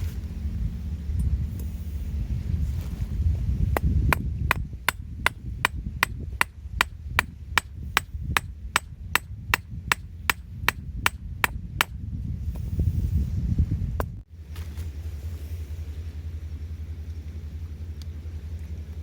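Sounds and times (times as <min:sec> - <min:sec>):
low rumble of wind: 0:00.0 - 0:19.0
hammer striking: 0:03.8 - 0:12.0.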